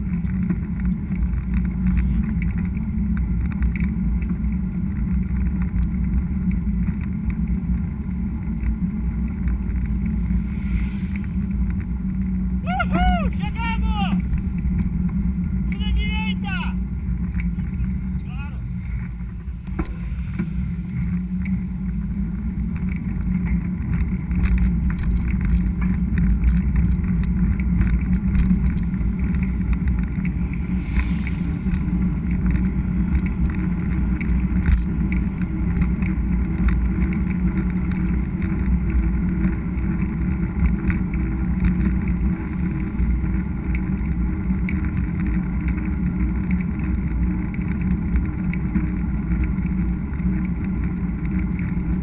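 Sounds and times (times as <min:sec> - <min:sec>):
bike rattles and clicks: 0:00.0 - 0:13.0, 0:16.8 - 0:52.0
tyres running over trail: 0:00.0 - 0:52.0
wind on microphone: 0:16.8 - 0:52.0.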